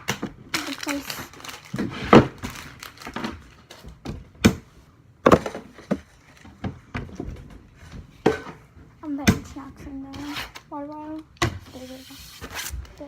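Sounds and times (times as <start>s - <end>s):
objects knocking and thudding: 0.0s - 9.6s.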